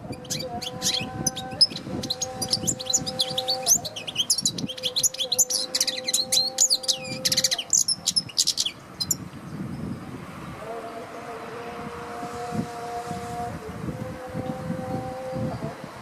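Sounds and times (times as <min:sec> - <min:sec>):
finch singing twittering song: 0:00.0 - 0:10.1.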